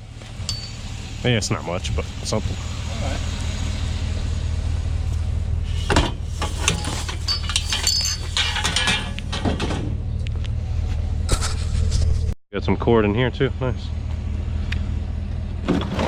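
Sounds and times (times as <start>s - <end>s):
vehicle engine running: 0.0s - 16.0s
scrap metal and glass rattling: 5.6s - 9.9s.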